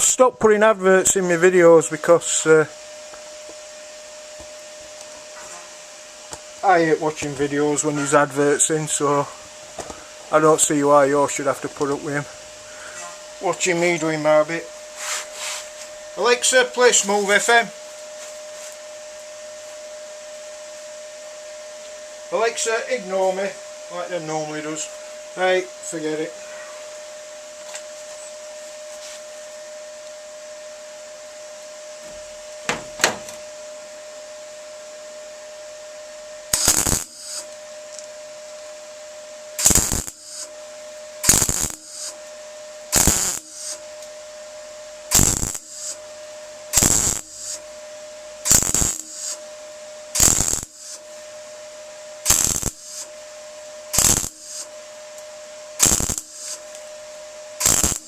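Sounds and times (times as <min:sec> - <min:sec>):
crackling tack welds: 0:00.0 - 0:17.7, 0:32.0 - 0:33.6, 0:36.4 - 0:38.8, 0:39.4 - 0:58.0
steady welder hum: 0:00.0 - 0:58.0.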